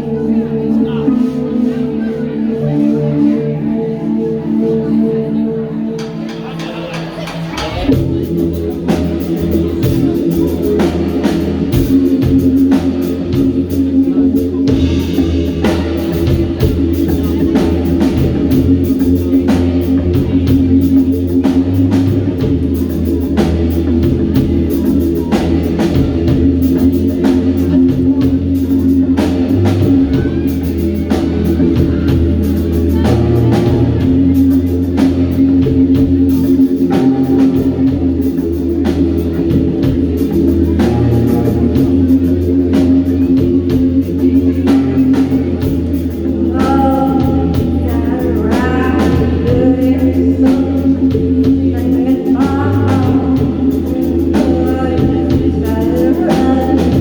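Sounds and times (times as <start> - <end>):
bass notes: 0.0 - 57.0
guitar: 0.0 - 57.0
drum beat: 6.0 - 57.0
person singing: 40.6 - 57.0.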